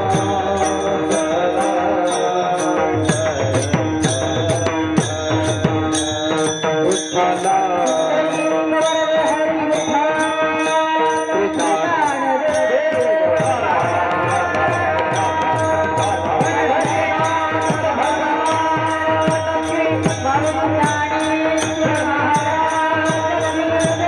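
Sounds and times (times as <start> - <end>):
hand cymbals struck: 0.0 - 24.0
harmonium melody: 0.0 - 24.0.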